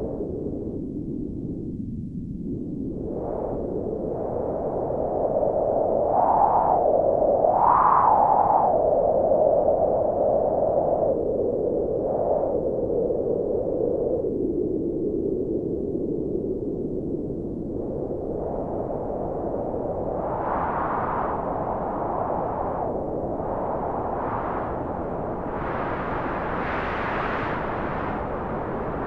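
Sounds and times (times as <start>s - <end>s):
wind gusts blowing: 18.4s - 29.0s.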